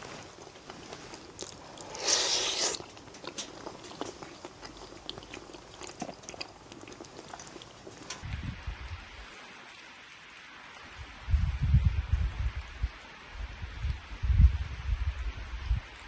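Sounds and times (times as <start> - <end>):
person chewing and biting: 0.0 - 8.2.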